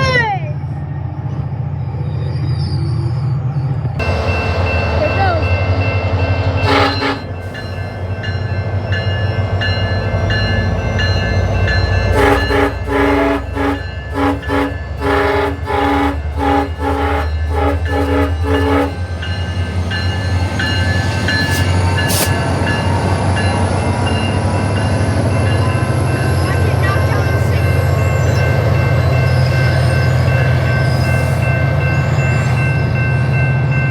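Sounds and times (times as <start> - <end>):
diesel locomotive rumble: 0.0 - 33.9
locomotive air horn blasts: 6.6 - 7.8, 12.1 - 19.3.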